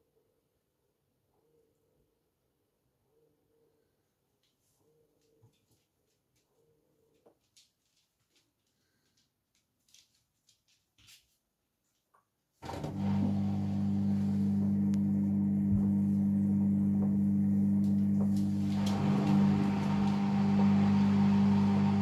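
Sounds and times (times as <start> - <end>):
drain pump humming: 12.6 - 22.0.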